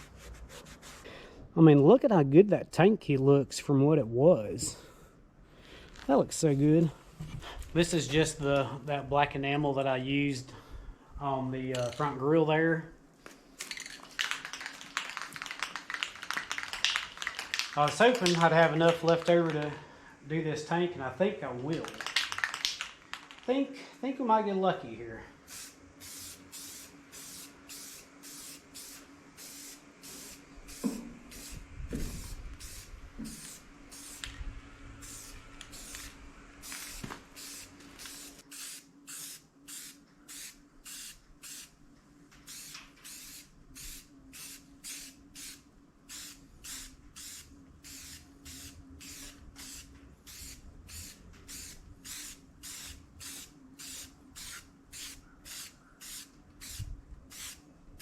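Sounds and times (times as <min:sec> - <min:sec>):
faint steady hum: 0:00.0 - 0:58.0
paint spraying hiss: 0:25.4 - 0:34.4, 0:35.0 - 0:41.8, 0:42.4 - 0:57.6.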